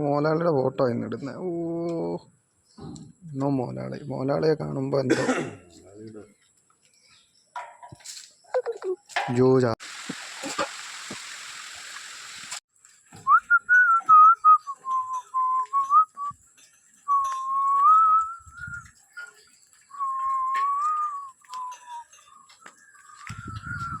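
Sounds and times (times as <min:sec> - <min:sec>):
steady hiss: 0:09.8 - 0:12.6
person whistling a tune: 0:13.2 - 0:16.3, 0:17.1 - 0:19.3, 0:19.9 - 0:22.2, 0:23.3 - 0:24.0.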